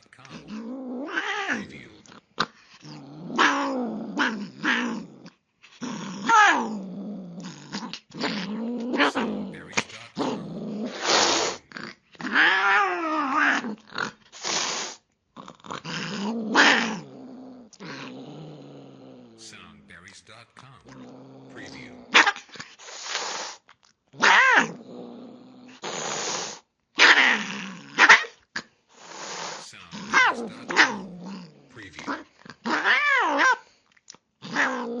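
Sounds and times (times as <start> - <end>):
cat hissing: 0.0 - 5.1, 8.2 - 15.0, 20.8 - 24.8, 25.7 - 27.2, 28.9 - 33.8
cat growling: 0.0 - 19.6, 20.6 - 23.6, 24.2 - 28.4, 29.0 - 33.8, 34.4 - 35.0.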